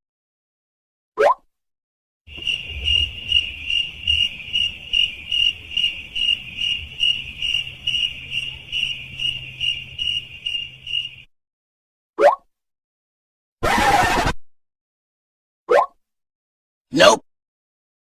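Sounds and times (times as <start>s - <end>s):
crickets chirping: 2.3s - 11.3s.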